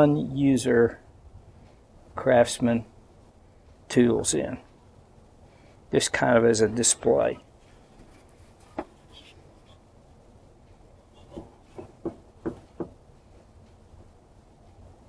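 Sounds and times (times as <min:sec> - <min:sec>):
light clicks and knocks: 0:11.1 - 0:13.0.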